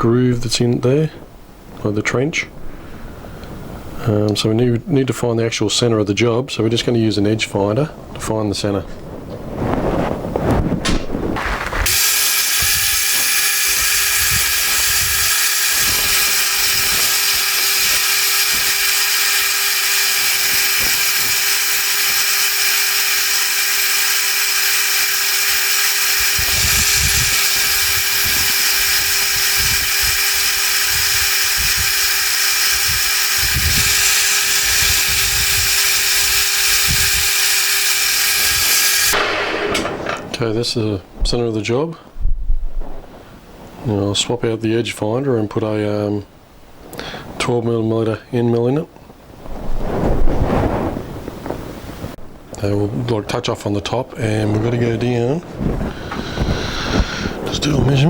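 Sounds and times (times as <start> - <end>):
milling machine spindle running: 11.6 - 40.4.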